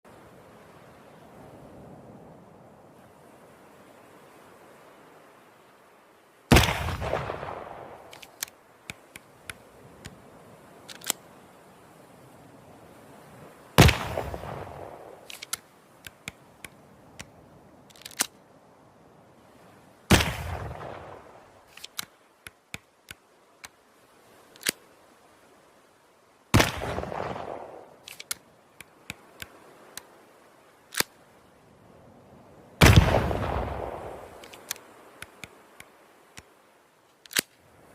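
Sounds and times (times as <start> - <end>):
flintlock pistol shots: 6.5 - 9.0, 13.8 - 15.6, 20.1 - 21.1, 26.6 - 28.4, 32.8 - 35.4
small sharp clicks: 8.0 - 10.2, 10.8 - 11.3, 15.2 - 17.3, 17.9 - 18.4, 21.7 - 23.8, 24.5 - 24.8, 28.0 - 30.1, 30.9 - 31.2, 34.4 - 36.5, 37.1 - 37.6.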